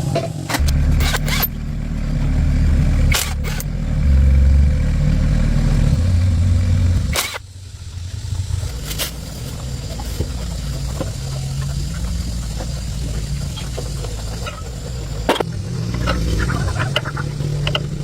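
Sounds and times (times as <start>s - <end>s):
tractor engine idling: 0.0s - 18.0s
sharp click: 3.1s - 3.7s, 7.1s - 7.4s.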